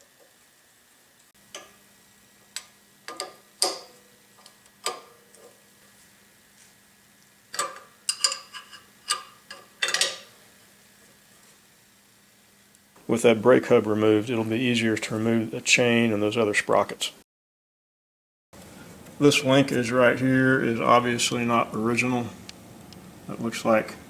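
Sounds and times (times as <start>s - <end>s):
metal tools clinking and knocking: 7.6s - 10.3s
faint steady hum: 18.6s - 24.0s.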